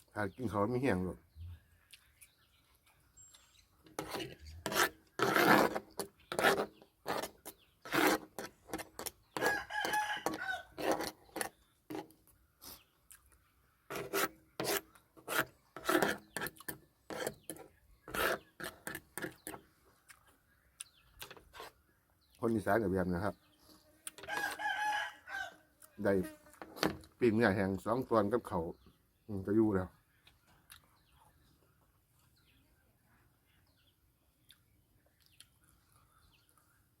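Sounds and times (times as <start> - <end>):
chewing and mouth clicks: 1.8 - 3.4, 12.7 - 13.5, 30.5 - 31.4, 34.4 - 36.8
rooster crowing: 9.4 - 10.8, 24.2 - 25.7.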